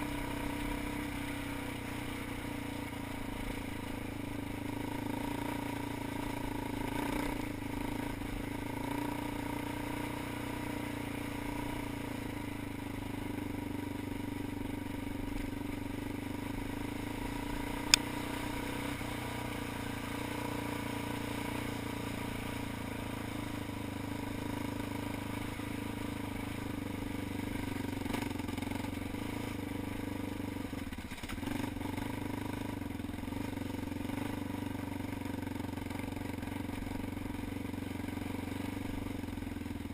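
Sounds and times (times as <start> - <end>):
atv engine droning: 0.0 - 39.9
sharp tick: 17.8 - 18.1.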